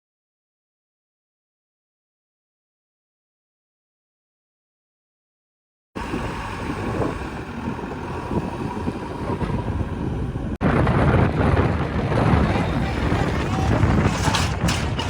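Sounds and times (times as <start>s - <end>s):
diesel engines rumbling: 6.0s - 15.0s
wind buffeting microphone: 6.0s - 15.0s.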